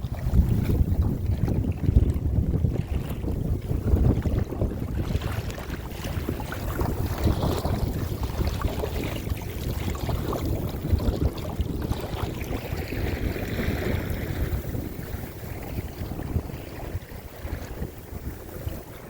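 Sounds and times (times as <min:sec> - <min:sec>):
kayak through choppy water: 0:00.0 - 0:19.0
wind buffeting microphone: 0:00.0 - 0:19.0.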